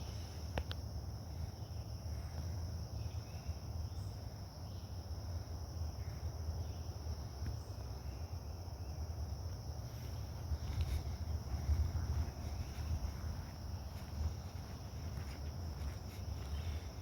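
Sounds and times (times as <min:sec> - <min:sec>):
crickets chirping: 0:00.0 - 0:17.0.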